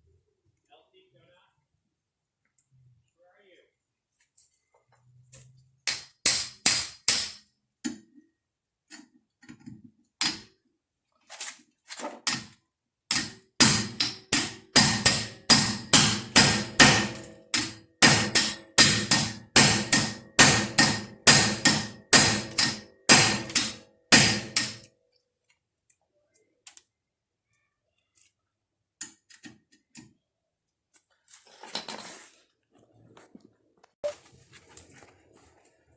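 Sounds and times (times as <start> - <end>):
hammer striking metal impact driver: 5.9 - 7.4, 13.1 - 24.9.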